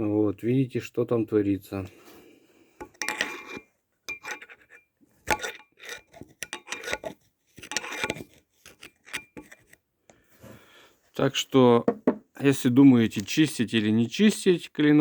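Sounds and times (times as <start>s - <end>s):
screwdriver scraping metal: 2.8s - 9.8s.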